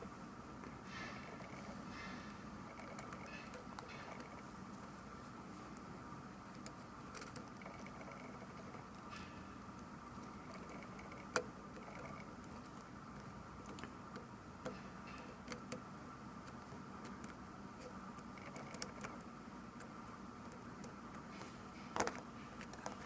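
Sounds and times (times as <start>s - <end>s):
faint steady hum: 0.0s - 23.0s
small tools clicking and tapping: 0.6s - 4.4s, 10.2s - 15.8s.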